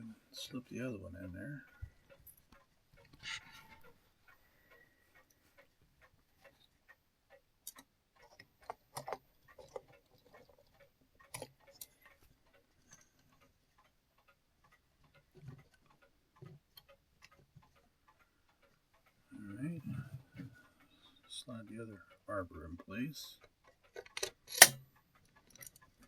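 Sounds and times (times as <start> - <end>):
metallic clicks of clock parts: 1.6 - 19.2, 22.8 - 26.0.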